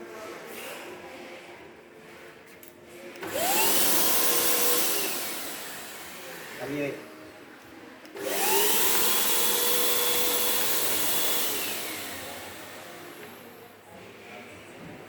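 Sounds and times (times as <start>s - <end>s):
blower motor whining: 3.2s - 6.6s, 8.1s - 13.5s.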